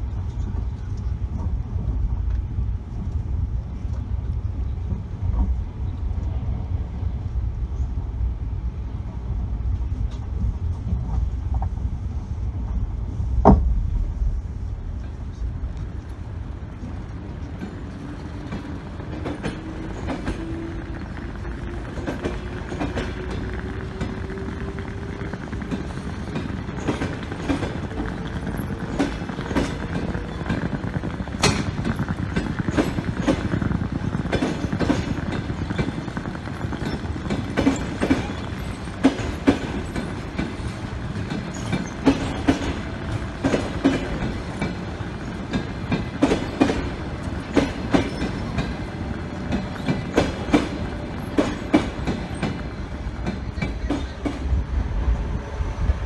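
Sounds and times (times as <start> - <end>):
train rolling rumble: 0.0 - 56.0
train wheels clacking: 13.4 - 56.0.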